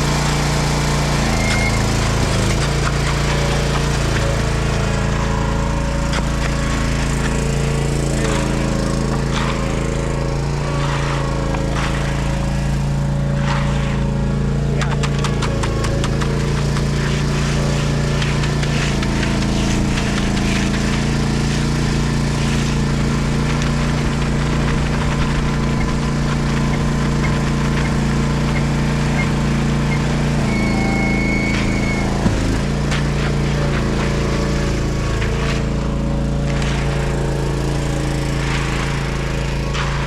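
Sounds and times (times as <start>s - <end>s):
diesel truck engine running: 0.0s - 9.2s, 26.5s - 35.8s
concrete mixer drum turning: 0.0s - 40.0s.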